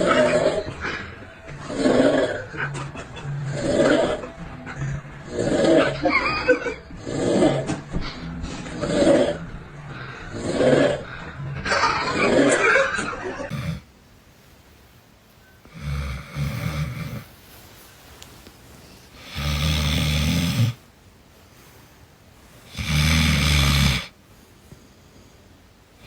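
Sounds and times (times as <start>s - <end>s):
loud snoring: 5.3s - 6.0s, 7.0s - 7.8s, 8.7s - 9.5s, 10.3s - 11.1s, 13.5s - 13.9s, 15.6s - 17.3s, 19.1s - 20.8s, 22.7s - 24.1s
quiet breathing: 6.9s - 11.6s, 13.5s - 26.0s.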